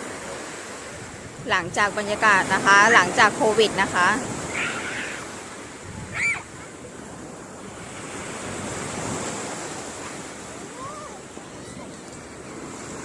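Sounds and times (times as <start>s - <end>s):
sea waves washing onto beach: 0.0s - 13.0s
wind buffeting microphone: 0.8s - 9.8s.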